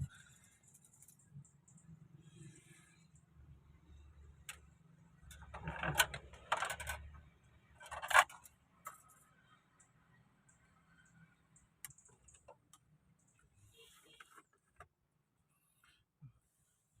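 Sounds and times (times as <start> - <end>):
metal clicks and rattles: 5.2 - 7.2, 7.8 - 9.3.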